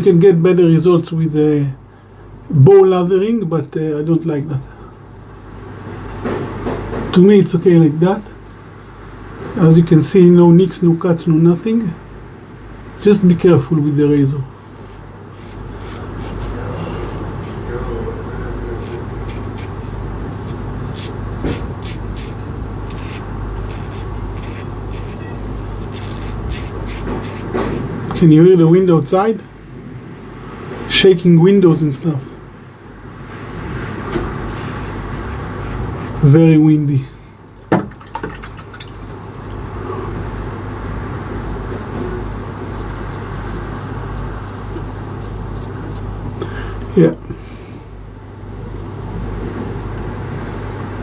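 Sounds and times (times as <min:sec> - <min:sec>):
razor scraping stubble: 0:05.1 - 0:06.6, 0:14.6 - 0:17.5, 0:18.7 - 0:28.0, 0:34.3 - 0:36.4, 0:41.2 - 0:46.2, 0:48.6 - 0:49.8.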